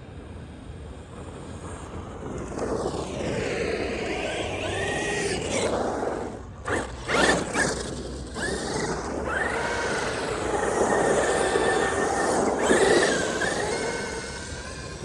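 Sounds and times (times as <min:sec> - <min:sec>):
toy truck electric motor whining: 0:03.9 - 0:15.0.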